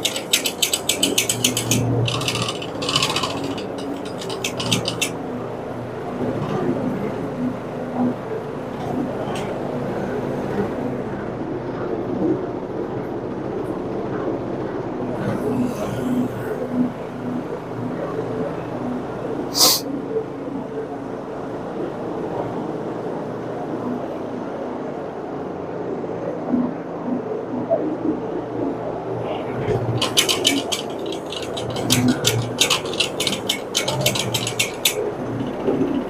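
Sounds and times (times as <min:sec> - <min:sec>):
carpet cleaning machine running: 0:00.0 - 0:11.9.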